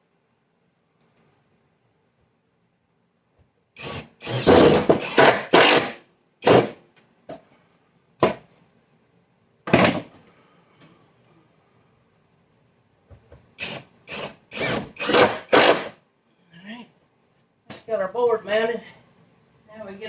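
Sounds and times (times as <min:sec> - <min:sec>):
power drill driving screws into wood: 0:03.8 - 0:06.8, 0:13.6 - 0:16.0.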